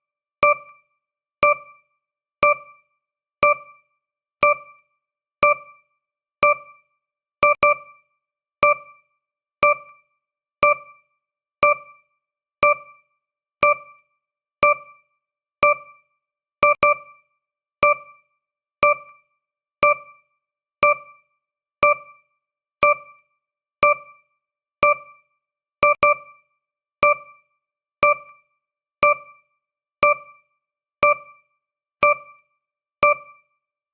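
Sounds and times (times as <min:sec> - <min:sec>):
electronic timer ticks: 0:16.6 - 0:17.0, 0:25.8 - 0:26.2, 0:32.0 - 0:32.4, 0:33.0 - 0:33.4.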